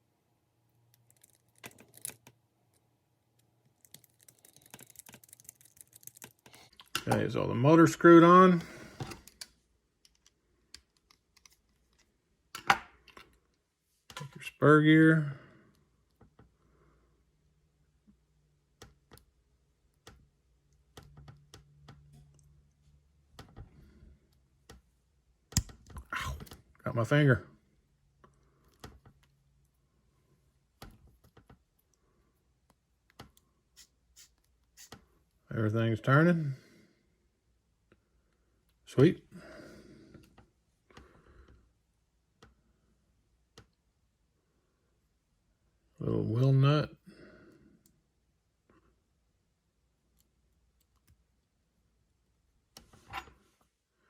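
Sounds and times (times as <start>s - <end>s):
faint clicks and taps of tools: 9.0s - 14.4s.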